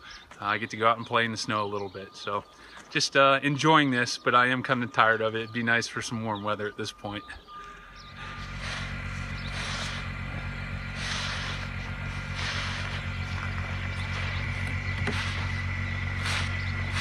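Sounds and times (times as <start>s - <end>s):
engine running with whine: 6.9s - 17.0s
hissing sweep of snow: 8.2s - 17.0s.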